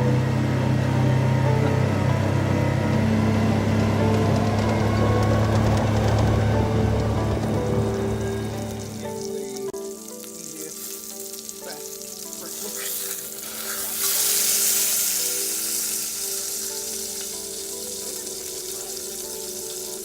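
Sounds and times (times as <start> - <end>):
background music: 0.0 - 20.0
food sizzling in a pan: 8.7 - 20.0.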